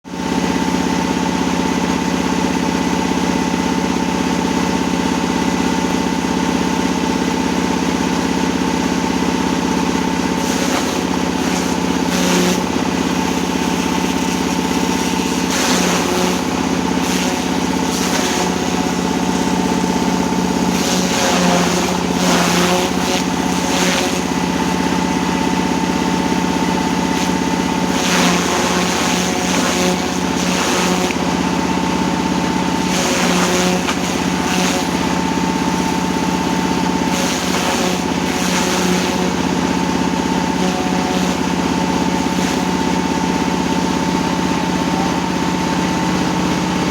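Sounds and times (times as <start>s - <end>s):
diesel engine running: 0.1s - 28.0s, 39.3s - 46.9s.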